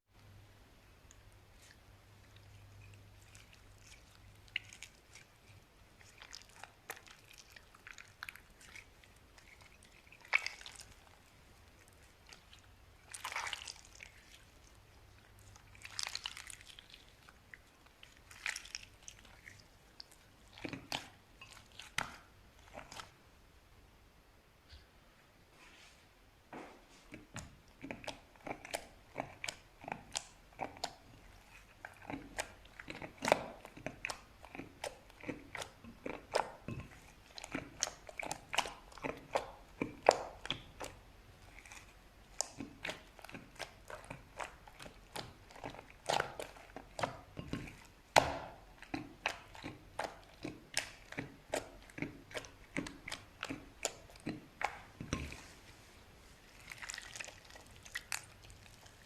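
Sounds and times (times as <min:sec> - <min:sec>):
slime clicking and popping: 0:31.8 - 0:41.0, 0:41.6 - 0:55.3.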